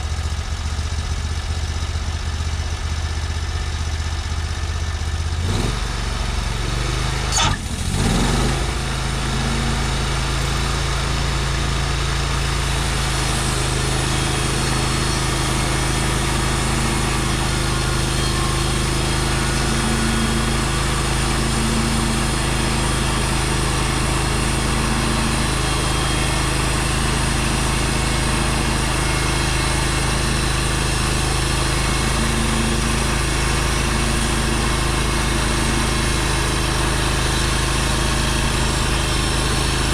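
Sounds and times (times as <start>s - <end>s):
gas engine running: 0.0s - 39.9s.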